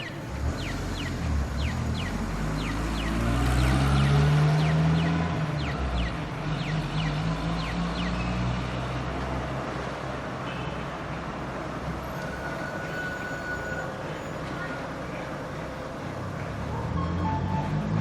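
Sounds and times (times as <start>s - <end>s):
crossing signal beeping chirps: 0.0s - 8.2s
street traffic: 0.0s - 18.0s
vehicle engine rumbling: 0.0s - 18.0s.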